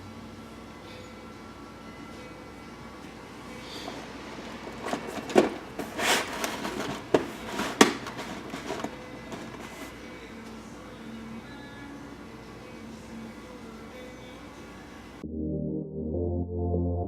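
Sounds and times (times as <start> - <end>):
cords rustling: 3.7 - 10.1
power cords knocking and clattering: 4.7 - 9.8.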